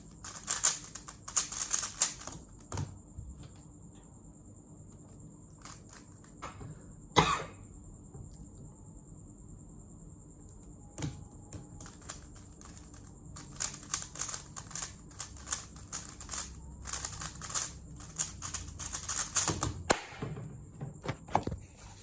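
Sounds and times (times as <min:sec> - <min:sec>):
speed cube plastic clicks: 0:00.2 - 0:02.7, 0:11.8 - 0:19.7.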